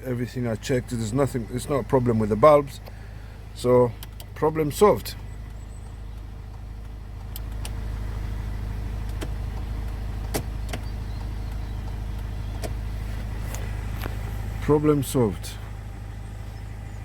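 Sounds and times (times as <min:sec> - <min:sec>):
car engine idling: 0:00.0 - 0:17.0
sharp clicks: 0:03.9 - 0:04.5, 0:05.3 - 0:07.9, 0:08.8 - 0:14.2.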